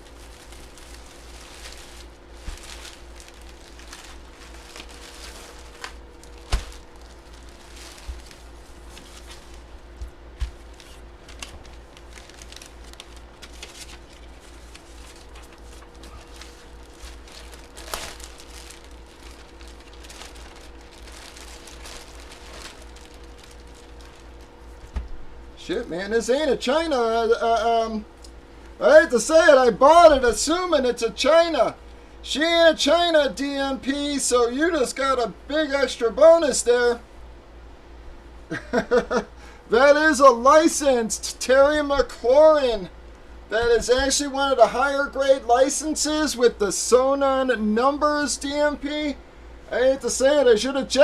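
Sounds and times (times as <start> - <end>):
packaging crinkling and rustling: 0.0 - 25.2
low electrical hum: 0.0 - 51.0.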